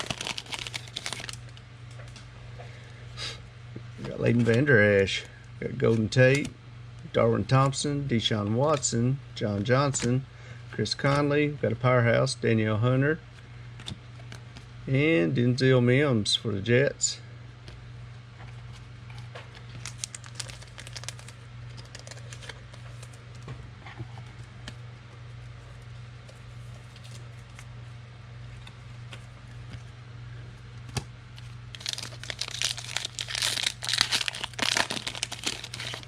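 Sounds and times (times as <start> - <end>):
cards rustling and clicking: 0.0 - 1.4, 18.6 - 23.4, 30.9 - 36.0
foil wrapper tearing and crinkling: 0.0 - 1.5, 19.8 - 22.6, 31.7 - 36.0
low steady hum: 0.0 - 36.0.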